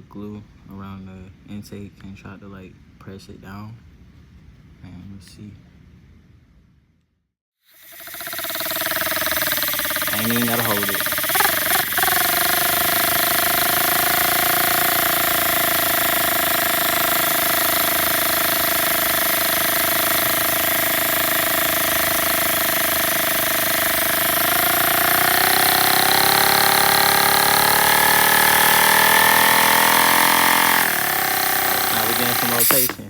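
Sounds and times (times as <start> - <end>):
air engine buzzing: 7.8 - 33.0
compressed air hiss: 31.5 - 33.0.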